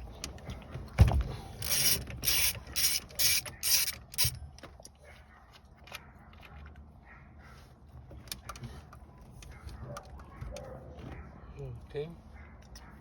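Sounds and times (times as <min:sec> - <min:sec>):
ratchet wrench ratcheting: 0:01.6 - 0:04.4.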